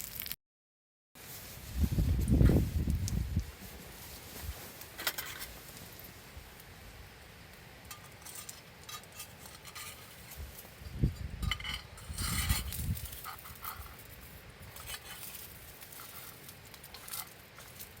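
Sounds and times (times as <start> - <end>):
utensils scraping on griddle: 4.9 - 5.7, 7.9 - 18.0.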